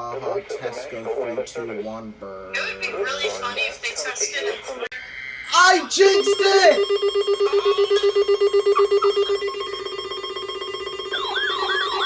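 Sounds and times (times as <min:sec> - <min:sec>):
pulsing alarm tone: 0:05.6 - 0:12.0
warbling siren-like tone: 0:06.2 - 0:12.0.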